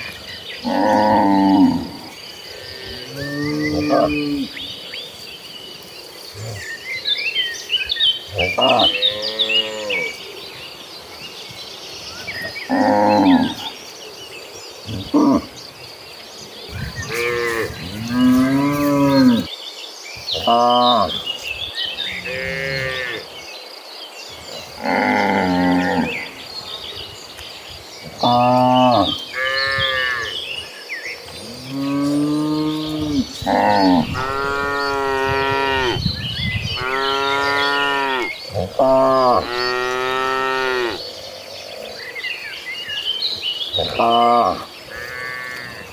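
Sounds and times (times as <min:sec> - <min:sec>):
cattle mooing: 0:31.7 - 0:36.0.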